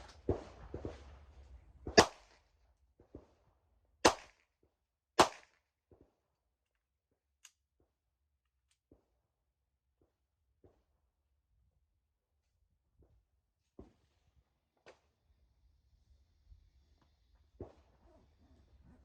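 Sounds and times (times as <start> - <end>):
loud handgun shots: 1.9 - 2.2, 4.0 - 4.3, 5.2 - 5.5.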